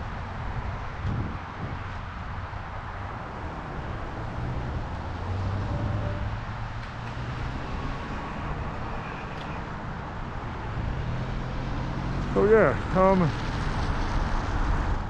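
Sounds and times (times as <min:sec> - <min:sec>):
wind noise: 0:00.0 - 0:11.3
road traffic rumble: 0:00.0 - 0:15.0.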